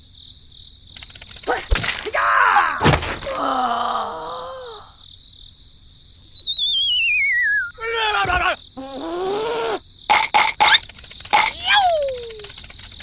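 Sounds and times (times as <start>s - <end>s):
high voice-like cries: 1.4s - 5.0s, 7.7s - 12.6s
descending cartoon whistle: 6.1s - 8.5s.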